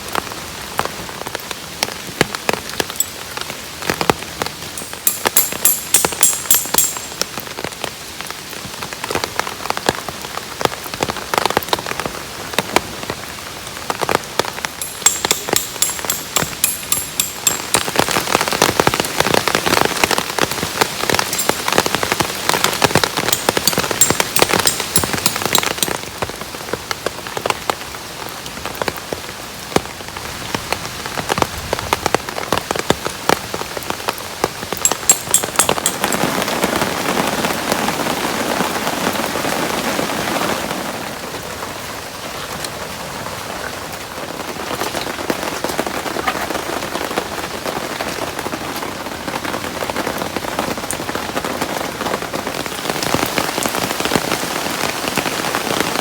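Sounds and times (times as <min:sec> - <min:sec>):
heavy rain falling: 0:00.0 - 0:56.0
raindrops ticking: 0:00.1 - 0:30.0, 0:32.1 - 0:37.8.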